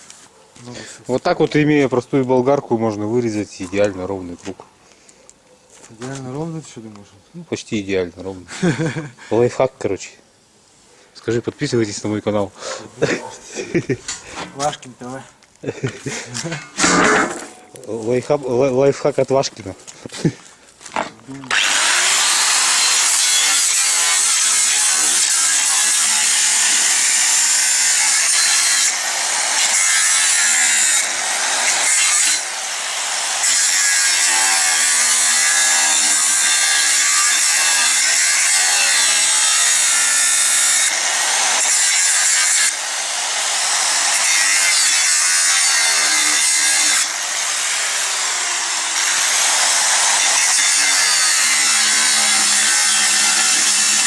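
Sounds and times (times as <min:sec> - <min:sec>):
angle grinder cutting steel: 0:16.5 - 0:18.1, 0:21.5 - 0:54.0.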